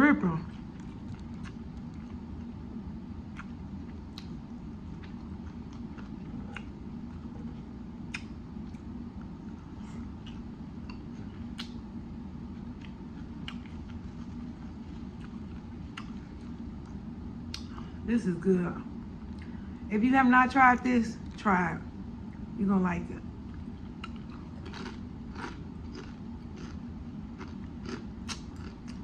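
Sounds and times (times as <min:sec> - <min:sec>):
steady low hum: 0:00.0 - 0:29.0
wet chewing and mouth smacks: 0:00.5 - 0:02.5, 0:03.3 - 0:11.8, 0:12.5 - 0:17.8, 0:23.5 - 0:26.8, 0:27.4 - 0:29.0.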